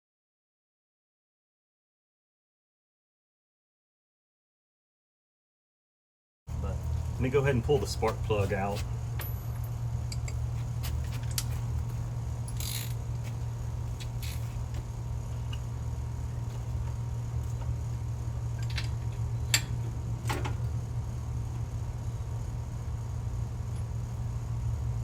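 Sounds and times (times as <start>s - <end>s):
low background hum: 6.5s - 25.0s
metal tool clicks and clinks: 12.4s - 13.0s.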